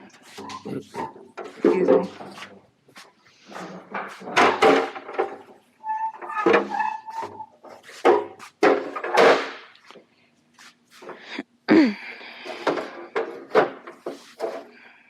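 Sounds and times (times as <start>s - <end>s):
broom sweeping a floor: 0.0s - 4.5s, 6.7s - 9.0s, 10.5s - 11.4s, 13.9s - 14.7s.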